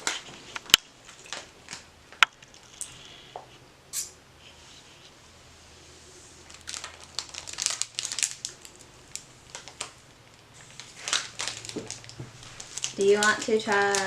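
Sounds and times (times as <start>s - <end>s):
snack wrapper crinkling: 0.0s - 3.0s, 6.4s - 14.0s.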